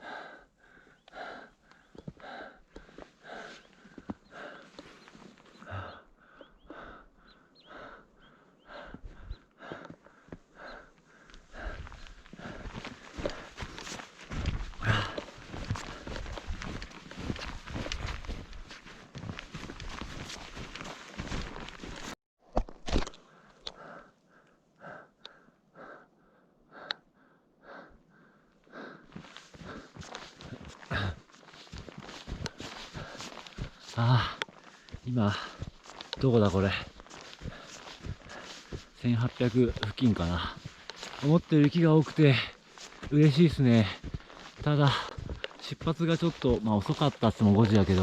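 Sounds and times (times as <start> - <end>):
person breathing hard: 0.0 - 22.1, 23.2 - 41.3
faint footsteps: 8.7 - 22.2, 29.1 - 48.0.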